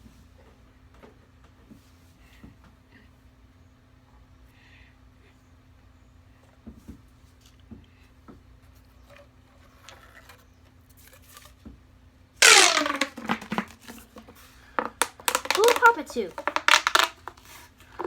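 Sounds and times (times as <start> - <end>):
crinkly zipping noise: 12.4 - 13.7, 15.3 - 17.5.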